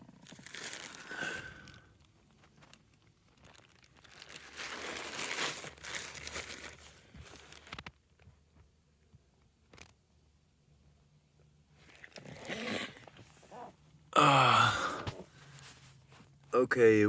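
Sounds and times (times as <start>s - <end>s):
rustling crinkling: 0.0s - 8.4s, 11.7s - 13.9s, 14.8s - 16.5s.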